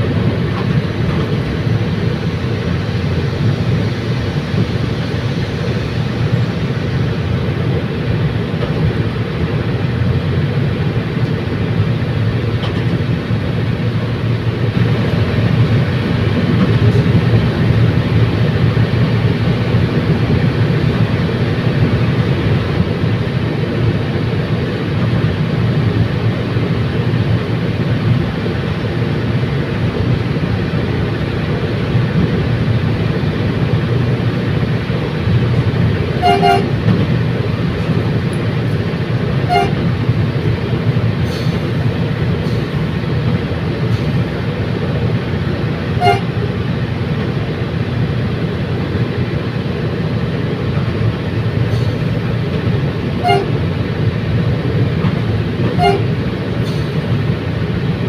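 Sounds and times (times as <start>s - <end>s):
train rumbling along tracks: 0.0s - 58.0s
train horn toots: 36.2s - 36.9s, 39.4s - 40.0s, 46.0s - 46.4s, 53.2s - 53.7s, 55.7s - 56.2s.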